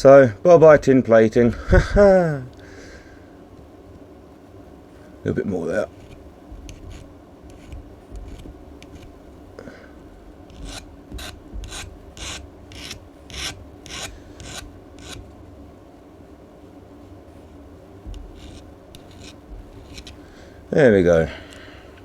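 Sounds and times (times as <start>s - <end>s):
hand file rasping on metal: 6.0s - 9.2s, 10.5s - 15.3s, 18.1s - 20.3s.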